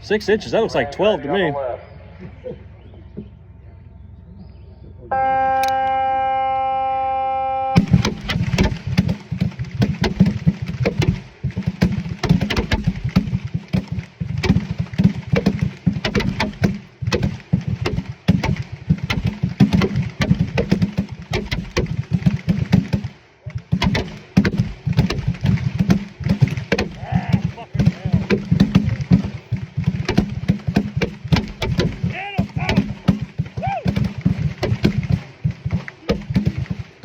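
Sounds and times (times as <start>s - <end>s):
revolver shots: 7.8s - 37.0s.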